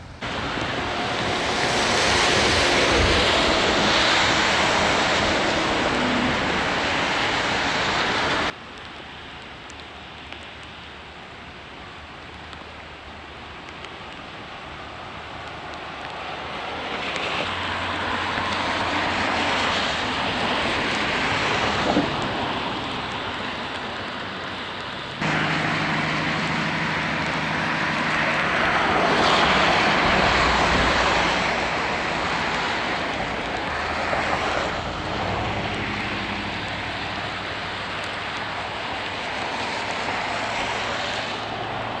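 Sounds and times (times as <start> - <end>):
floodwater rushing: 0.0 - 42.0.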